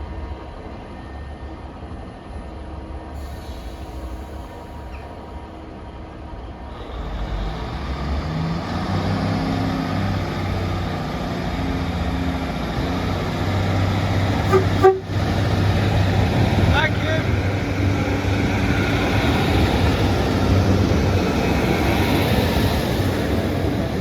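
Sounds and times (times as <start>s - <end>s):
train engine hum: 0.0s - 24.0s
train horn toots: 14.4s - 15.4s.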